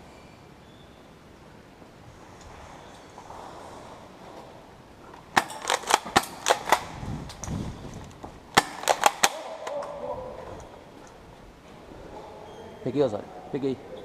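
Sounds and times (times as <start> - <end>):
airsoft guns firing: 5.3 - 7.0, 8.5 - 10.1.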